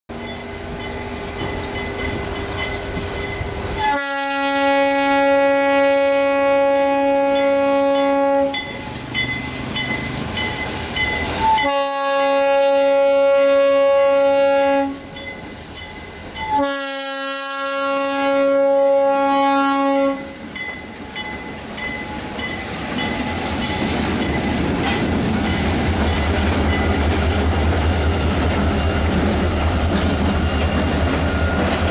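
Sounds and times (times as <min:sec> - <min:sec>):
train rumbling past: 0:00.1 - 0:31.9
off-key locomotive horn blasts: 0:03.7 - 0:08.8, 0:11.4 - 0:15.2, 0:16.4 - 0:20.5.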